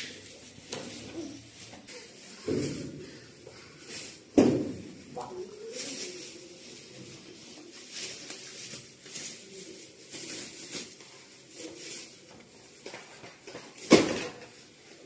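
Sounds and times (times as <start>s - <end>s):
rustling handling noises: 0.0s - 15.0s.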